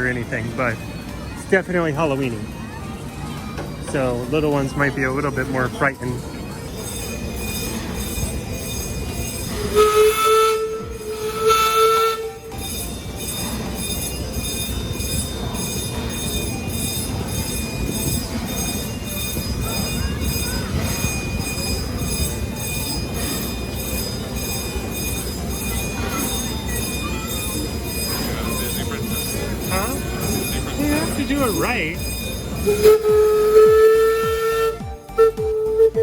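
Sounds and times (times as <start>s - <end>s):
train rumbling and clattering: 0.0s - 36.0s
train whistle blasts: 9.4s - 12.8s, 32.1s - 36.0s.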